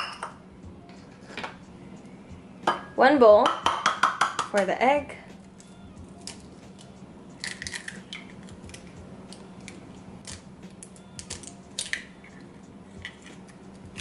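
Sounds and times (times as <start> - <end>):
faint steady hum: 0.0 - 14.0
bowls and utensils clicking: 6.2 - 14.0.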